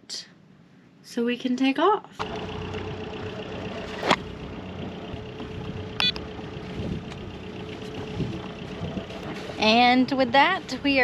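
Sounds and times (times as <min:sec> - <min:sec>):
boat engine idling: 0:02.2 - 0:11.0
brief high beep: 0:06.0 - 0:06.2.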